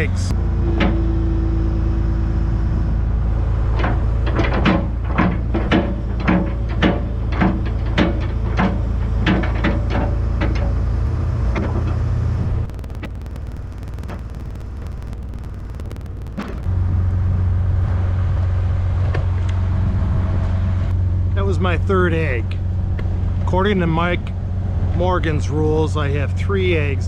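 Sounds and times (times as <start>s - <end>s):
excavator diesel engine droning: 0.0s - 14.6s.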